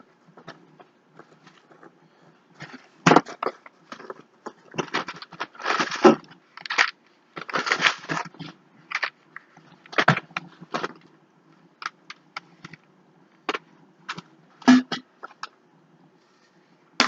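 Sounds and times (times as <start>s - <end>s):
packing material crackling and tearing: 4.8s - 9.1s.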